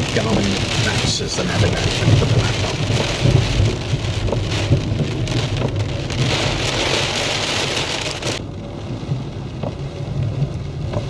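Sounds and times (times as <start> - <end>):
car engine and tyre rumble: 0.0 - 11.0
rain hissing on a car: 0.0 - 11.0.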